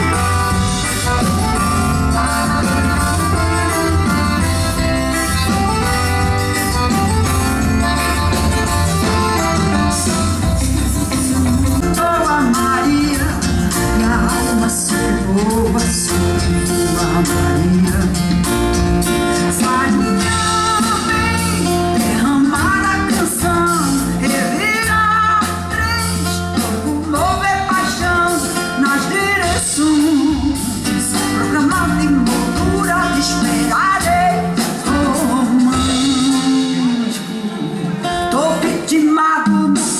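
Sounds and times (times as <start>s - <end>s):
live band playing: 0.0s - 39.9s
woman singing: 10.8s - 37.4s, 38.1s - 39.9s.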